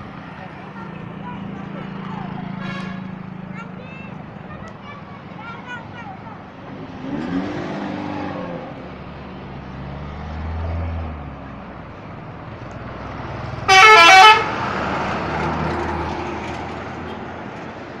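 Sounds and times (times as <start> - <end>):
bus engine rumble: 0.0 - 18.0
musical bus horn: 2.6 - 3.2, 13.7 - 14.6.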